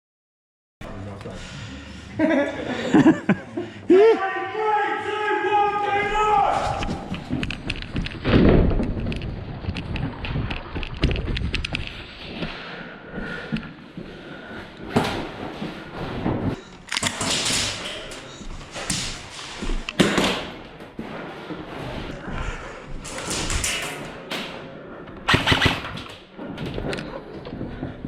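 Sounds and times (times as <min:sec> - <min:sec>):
thumps and sharp bursts of airsoft fire: 0:25.2 - 0:26.1.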